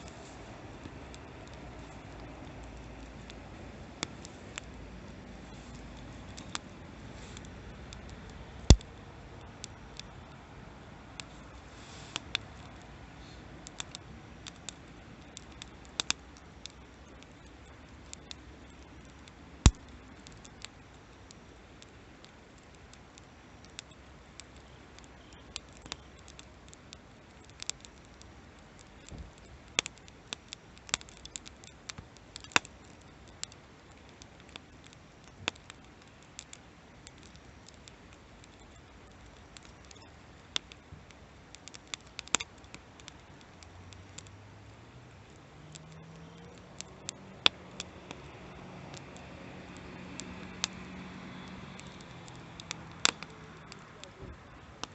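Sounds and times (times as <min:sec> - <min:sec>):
low steady fire hiss: 0:00.0 - 0:54.9
campfire pops and snaps: 0:00.8 - 0:54.9.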